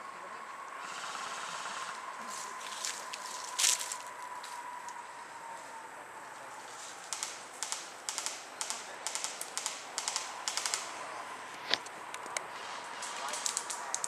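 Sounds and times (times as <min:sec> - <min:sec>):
airsoft guns firing: 0:07.2 - 0:10.9.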